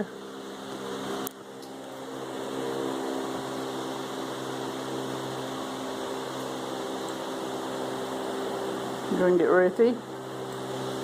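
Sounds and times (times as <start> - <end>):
appliance machine hum: 0.0 - 11.0.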